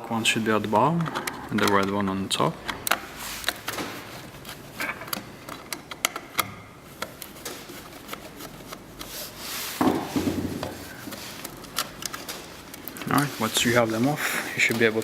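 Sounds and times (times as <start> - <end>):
handling noise: 0.6 - 15.0
screwdriver clicks and taps: 5.1 - 7.2.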